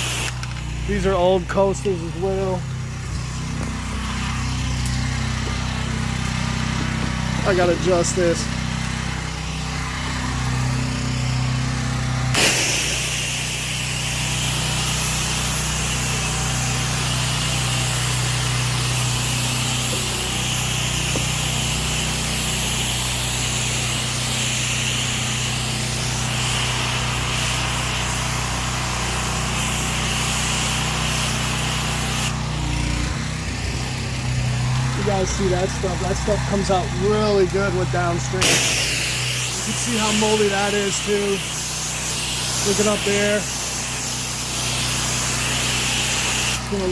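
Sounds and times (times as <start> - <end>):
water jet hissing against house: 0.0 - 0.6, 12.3 - 32.9, 38.3 - 46.9
pressure washer engine running: 0.0 - 46.9.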